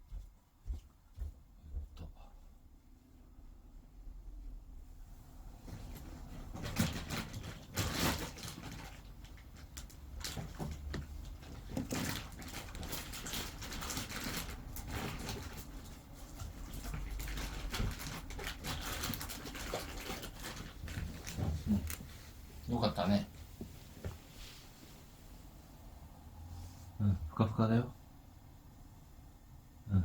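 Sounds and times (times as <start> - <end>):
cat kneading fabric bed: 5.4 - 25.7.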